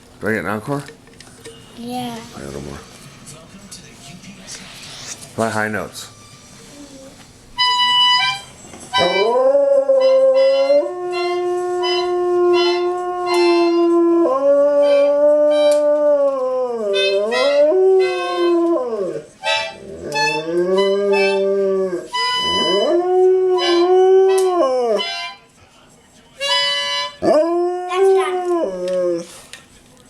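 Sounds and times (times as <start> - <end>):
instrument playing: 6.1 - 15.9, 16.9 - 25.5, 26.4 - 27.2
dog howling: 9.0 - 25.0, 27.2 - 29.3.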